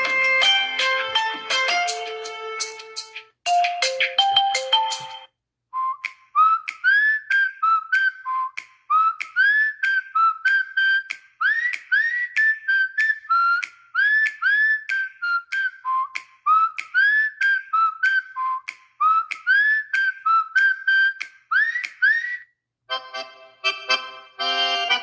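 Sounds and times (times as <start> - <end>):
plucked-note ringtone melody: 0.0 - 2.8, 3.5 - 5.3
whistle-like ringtone melody: 3.5 - 5.3.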